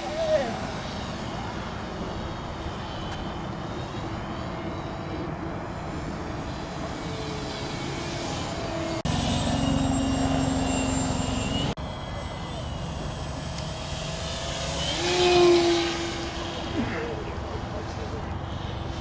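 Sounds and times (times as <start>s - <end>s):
model airplane motor droning: 0.0s - 19.0s.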